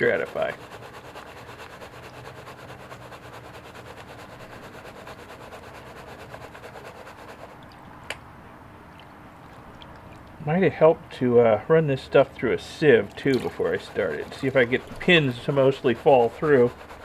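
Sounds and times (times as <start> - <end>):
gritty swishing of shaken pan: 0.0 - 7.6, 11.3 - 17.0.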